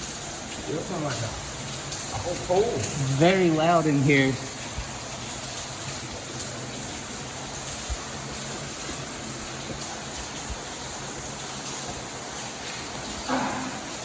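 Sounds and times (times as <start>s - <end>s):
water rushing in a cave: 0.0s - 14.0s.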